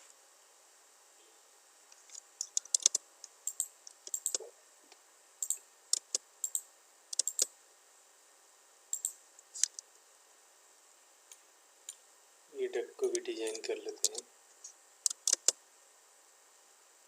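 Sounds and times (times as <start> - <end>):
keyboard typing: 2.4 - 4.5, 5.4 - 7.5, 9.0 - 9.8, 13.5 - 14.2, 15.0 - 15.6
mouse buttons clicking: 2.4 - 4.5, 5.4 - 7.5, 9.0 - 9.8, 13.5 - 14.2, 15.0 - 15.6.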